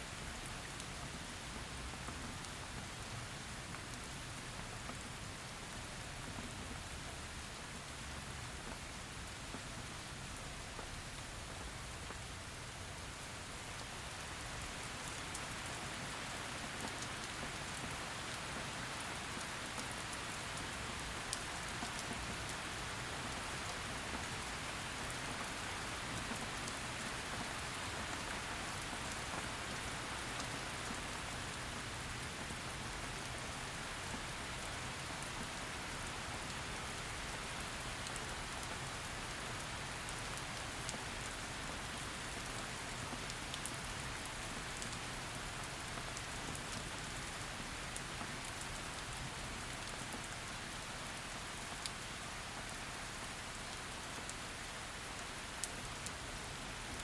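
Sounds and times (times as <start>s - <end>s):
heavy rain falling: 0.1s - 57.0s.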